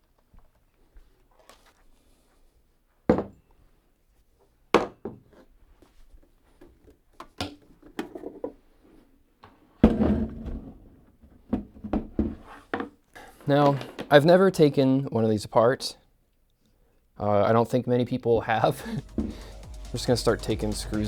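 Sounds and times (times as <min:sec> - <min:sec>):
heavy thud with scrape: 0:18.9 - 0:21.0.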